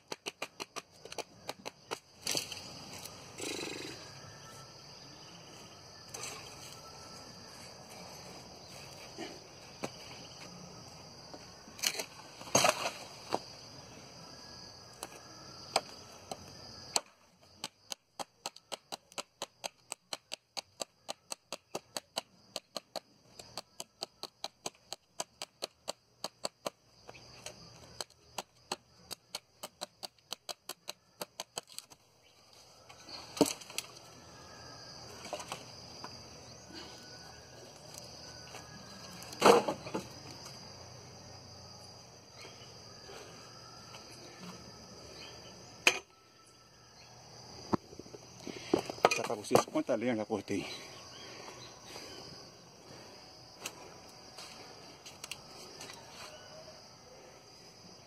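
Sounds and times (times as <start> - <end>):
wood chopping strikes: 16.9 - 26.8, 39.3 - 40.1.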